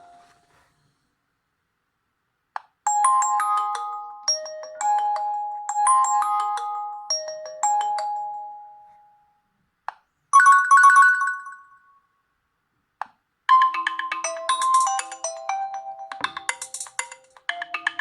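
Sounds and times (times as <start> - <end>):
electronic ringtone melody: 13.5 - 18.0.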